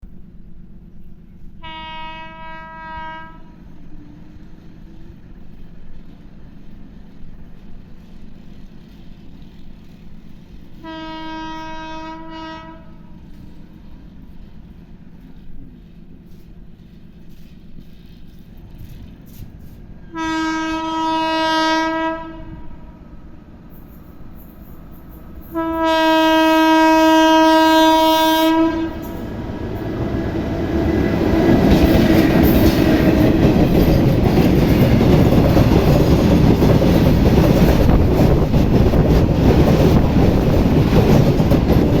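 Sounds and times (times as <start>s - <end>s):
train rumble and wheels on rails: 0.0s - 42.0s
locomotive horn blasts: 1.6s - 3.6s, 10.8s - 13.1s, 20.1s - 23.0s, 25.5s - 29.3s.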